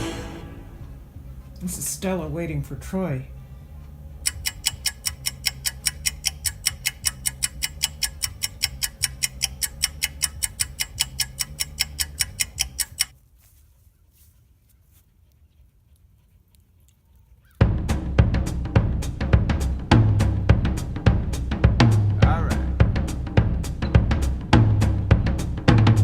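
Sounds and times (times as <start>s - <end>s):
music with drums: 0.0s - 1.4s, 17.6s - 26.0s
low hum: 0.0s - 12.5s
rapid ticking: 4.2s - 13.1s.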